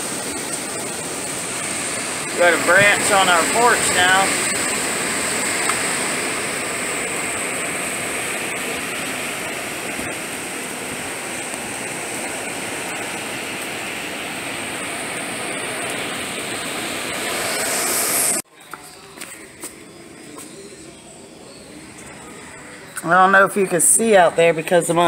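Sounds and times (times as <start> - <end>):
strong wind and rain rushing: 0.0 - 18.4
thin high whine: 0.0 - 24.5.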